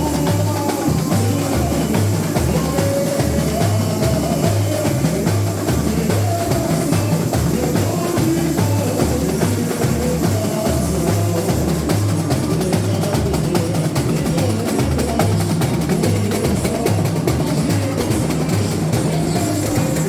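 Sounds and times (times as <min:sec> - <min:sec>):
deep bass drums: 0:00.0 - 0:20.0
snare drums and small percussion: 0:00.0 - 0:20.0.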